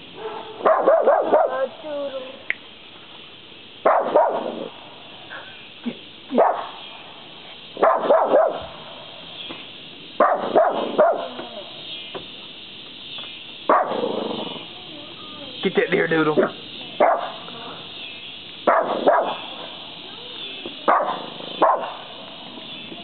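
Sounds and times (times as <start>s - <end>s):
small dog barking: 0.2s - 1.8s, 3.8s - 4.7s, 6.3s - 6.8s, 7.8s - 8.8s, 10.2s - 11.6s, 13.7s - 14.5s, 17.0s - 17.5s, 18.6s - 19.4s, 20.9s - 22.2s.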